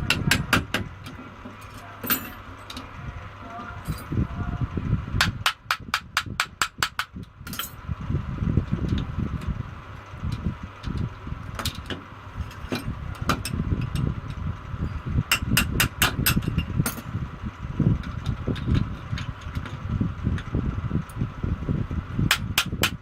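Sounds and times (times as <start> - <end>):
low uneven rumble: 0.0 - 22.9.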